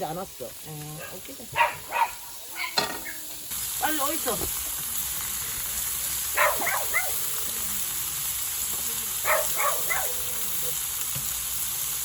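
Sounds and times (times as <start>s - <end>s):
steady high hiss: 0.0s - 12.0s
dog barking: 1.0s - 2.9s, 6.3s - 7.3s, 9.2s - 10.4s.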